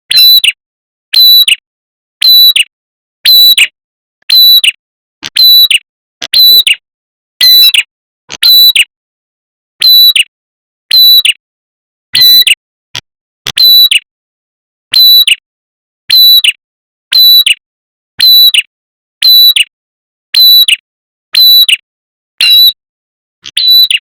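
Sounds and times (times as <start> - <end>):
bird chirping: 23.6 - 24.0.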